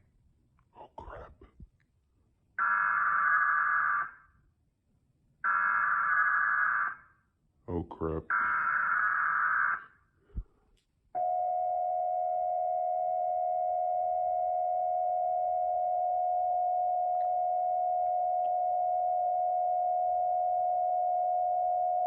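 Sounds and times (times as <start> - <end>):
long steady attention tone: 11.2 - 22.0.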